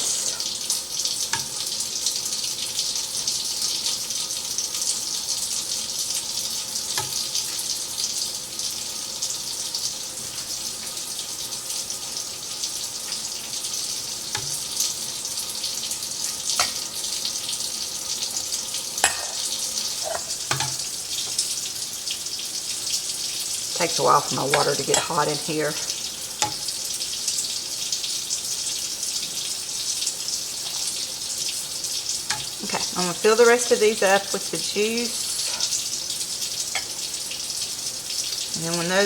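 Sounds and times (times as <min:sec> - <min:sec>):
tap water pouring over glass jars: 0:00.0 - 0:08.5, 0:09.2 - 0:29.4.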